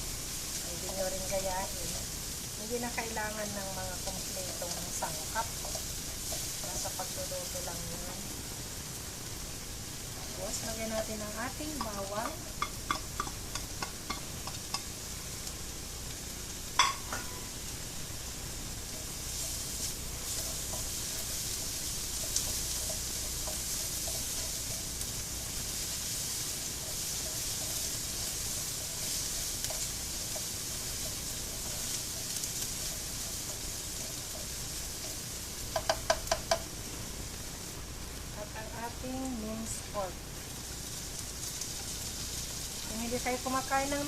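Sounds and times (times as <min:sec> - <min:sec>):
onion sizzling in hot oil: 0:00.0 - 0:44.0
utensil clinking on pan: 0:12.6 - 0:14.9, 0:16.8 - 0:17.5.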